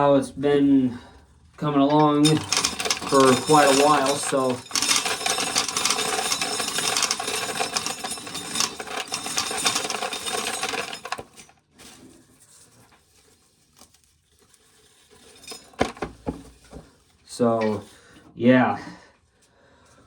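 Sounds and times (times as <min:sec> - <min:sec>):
corn sheller rattling: 0:01.6 - 0:11.6.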